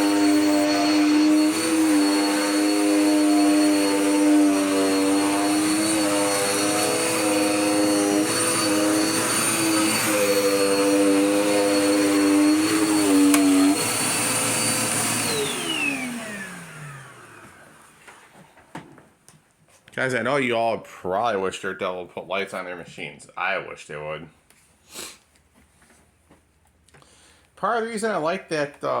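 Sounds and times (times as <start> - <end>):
vacuum motor winding down: 0.0 - 18.0
vacuum cleaner running: 0.0 - 19.0.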